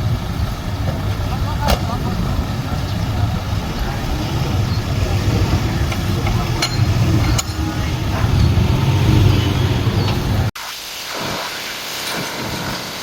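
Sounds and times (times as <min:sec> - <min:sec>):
diesel engine running: 0:00.0 - 0:10.6
sharp metallic clanks: 0:03.7 - 0:10.5.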